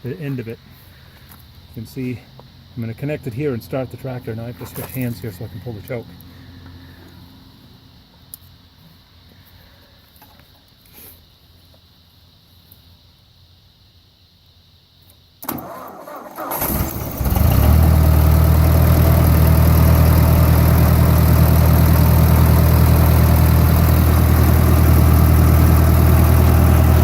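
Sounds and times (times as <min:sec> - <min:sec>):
tractor engine cranking: 0:15.4 - 0:27.0
tractor engine idling loudly: 0:16.4 - 0:27.0.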